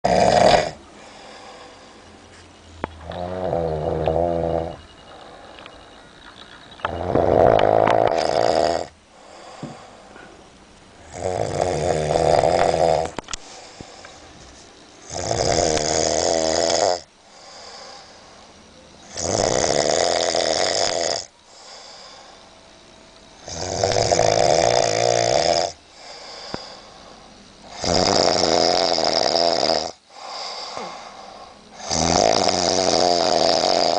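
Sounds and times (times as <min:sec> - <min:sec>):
person snoring: 0:00.0 - 0:02.0, 0:03.0 - 0:05.6, 0:06.9 - 0:10.0, 0:11.0 - 0:14.1, 0:15.0 - 0:18.5, 0:19.1 - 0:22.5, 0:23.4 - 0:27.0, 0:27.6 - 0:33.9
quiet breathing: 0:00.8 - 0:06.9, 0:09.0 - 0:11.1, 0:12.4 - 0:16.0, 0:17.1 - 0:19.2, 0:21.2 - 0:23.5, 0:25.0 - 0:27.9, 0:30.0 - 0:31.9.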